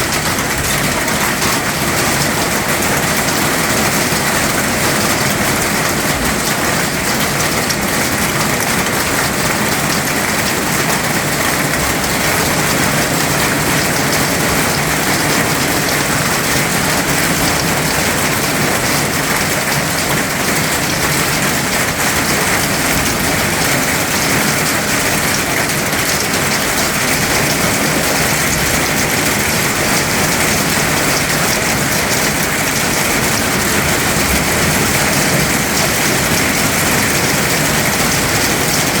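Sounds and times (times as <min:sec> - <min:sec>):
heavy rain hissing: 0:00.0 - 0:39.0.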